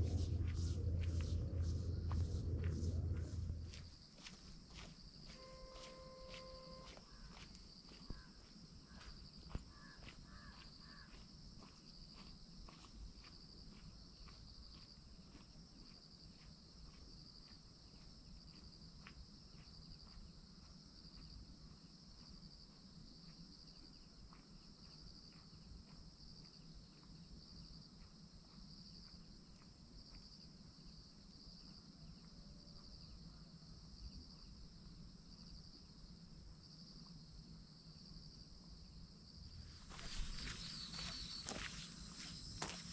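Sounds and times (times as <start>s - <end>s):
insect chorus trilling: 39.5s - 42.9s.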